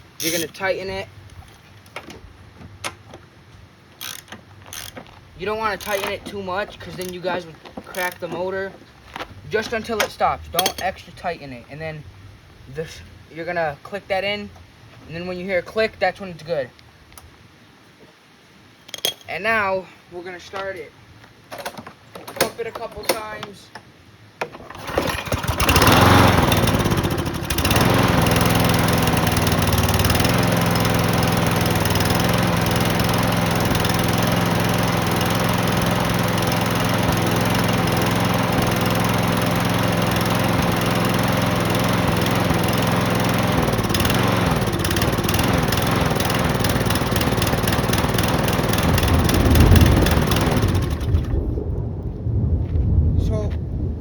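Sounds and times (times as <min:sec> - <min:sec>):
lawnmower engine running: 0:03.9 - 0:08.5, 0:24.5 - 0:51.4.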